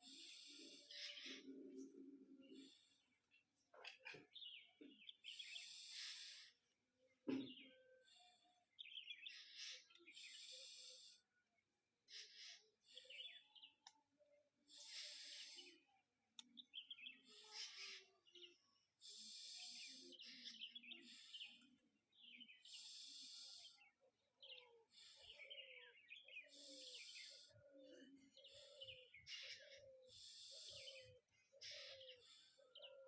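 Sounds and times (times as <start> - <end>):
forceful breathing through nose: 0.0 - 1.5, 5.3 - 6.7, 9.4 - 11.3, 14.7 - 15.8, 17.2 - 18.0, 19.0 - 21.8, 22.6 - 23.9, 24.9 - 25.5, 26.4 - 27.7, 28.3 - 32.8
birds chirping: 0.0 - 11.3, 12.0 - 13.9, 14.6 - 33.0.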